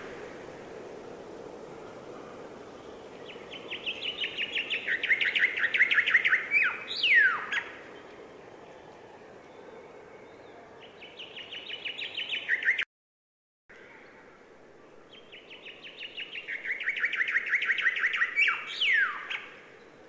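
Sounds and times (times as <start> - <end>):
faint steady hiss: 0.0 - 12.5
songbird singing trilled song: 2.8 - 7.8, 10.2 - 12.8, 15.1 - 19.6.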